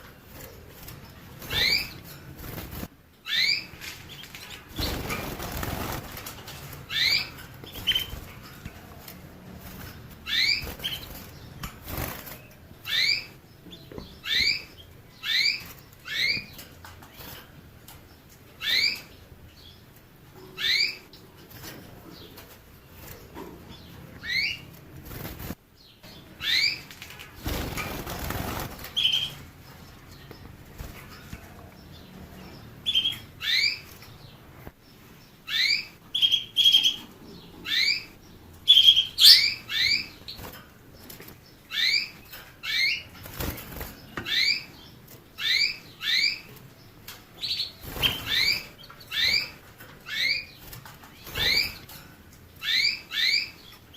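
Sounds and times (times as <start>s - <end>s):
canary chirping: 0.0s - 53.9s
wings flapping: 0.3s - 2.9s, 3.8s - 8.6s, 9.6s - 12.5s, 26.8s - 29.5s.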